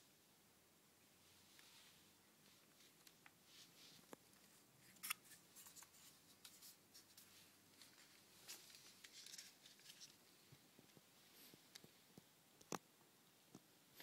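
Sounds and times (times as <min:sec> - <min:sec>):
handling rustles: 0:01.5 - 0:12.1.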